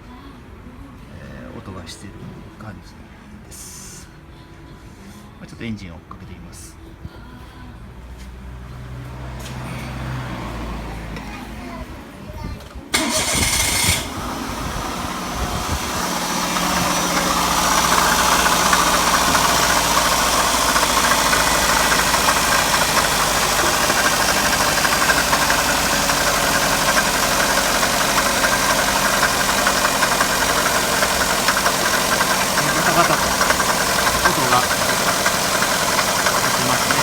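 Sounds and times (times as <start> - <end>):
car engine idling: 12.9 - 37.0
water pump pulley rattle: 13.0 - 14.1, 15.4 - 37.0.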